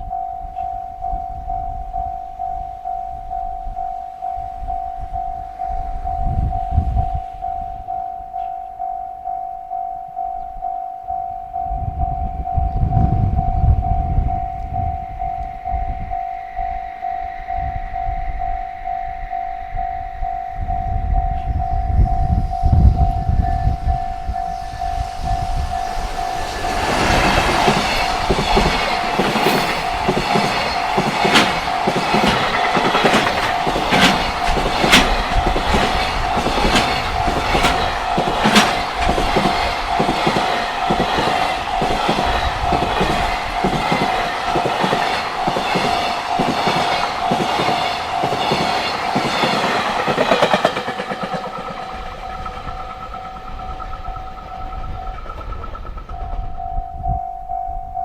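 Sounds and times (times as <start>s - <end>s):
level-crossing bell ringing: 0.0s - 50.6s, 51.3s - 55.3s, 56.2s - 58.0s
train rumble: 0.0s - 58.0s
wheels clacking over rail joints: 26.1s - 56.5s.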